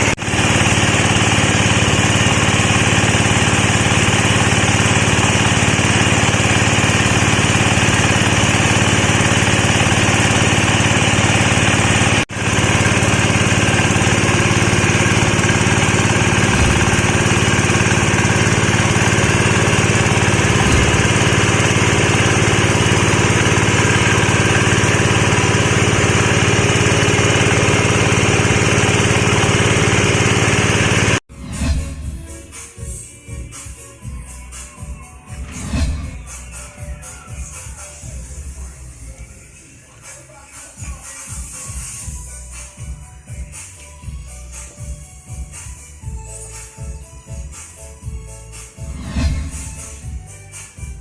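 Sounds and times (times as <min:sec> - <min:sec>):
disk mill droning: 0:00.0 - 0:32.2.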